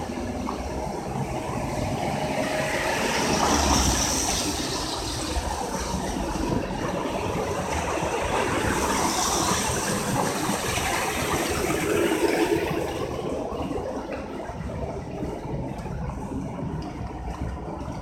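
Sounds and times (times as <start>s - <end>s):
car passing on wet road: 0.1s - 13.0s.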